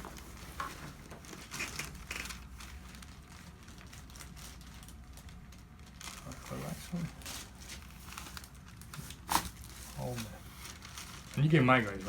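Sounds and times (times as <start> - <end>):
person rustling on padded table: 0.0 - 3.1
low room hum: 0.0 - 12.0.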